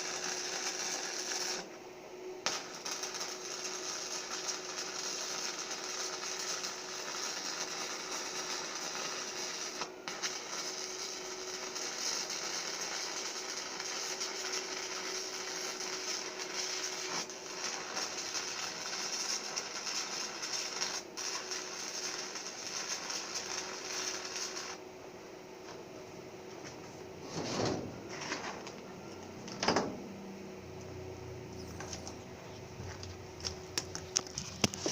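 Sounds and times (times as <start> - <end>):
welding arc crackling hiss: 0.0 - 1.8, 2.4 - 24.8, 30.8 - 34.9.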